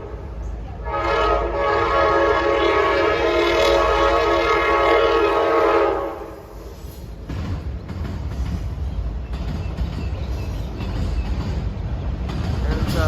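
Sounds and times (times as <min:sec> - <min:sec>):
train horn chord: 0:00.0 - 0:06.6
low rumble of train: 0:00.0 - 0:13.0.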